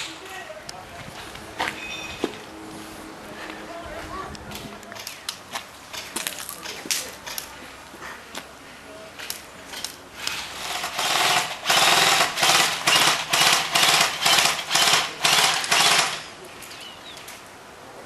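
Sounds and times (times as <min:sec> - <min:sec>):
airsoft gun firing bursts: 0:10.3 - 0:16.3.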